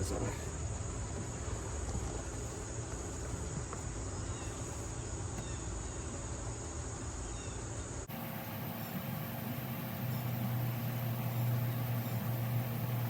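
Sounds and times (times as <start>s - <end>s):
crickets trilling: 0.0s - 13.0s
low background rumble: 8.0s - 13.0s.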